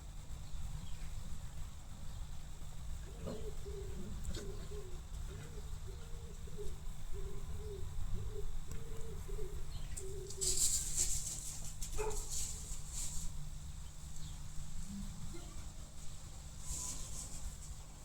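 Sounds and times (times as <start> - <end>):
scuffling and rustling: 10.0 - 13.4, 16.0 - 18.0.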